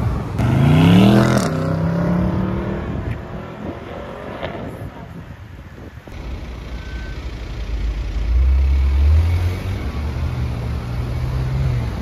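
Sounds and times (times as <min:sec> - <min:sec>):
car engine rumbling: 0:00.0 - 0:12.0.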